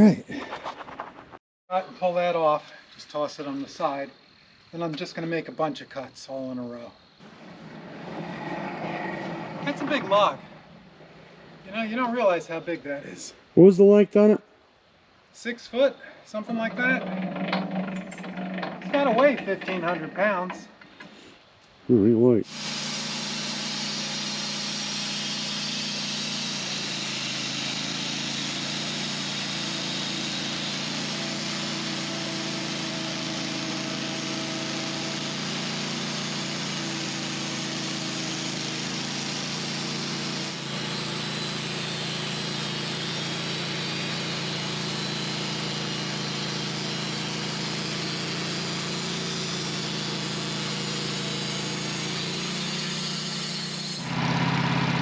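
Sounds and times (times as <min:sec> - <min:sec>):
band sawmill engine running: 0:06.6 - 0:12.3, 0:16.4 - 0:21.2, 0:22.5 - 0:55.0
band saw blade cutting log: 0:22.4 - 0:54.9.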